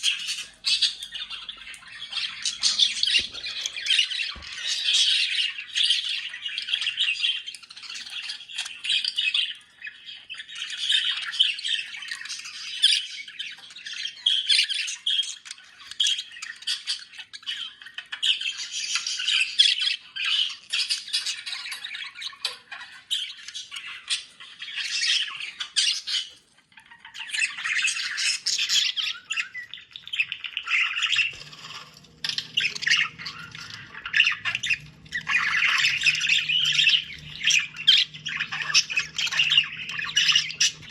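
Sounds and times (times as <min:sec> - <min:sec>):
budgerigars chattering and warbling: 0:00.0 - 0:40.9.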